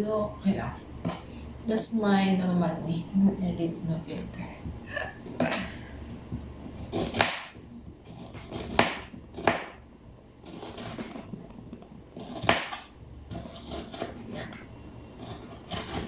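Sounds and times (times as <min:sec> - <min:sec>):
knife chopping on cutting board: 0:06.6 - 0:09.8, 0:12.2 - 0:14.6.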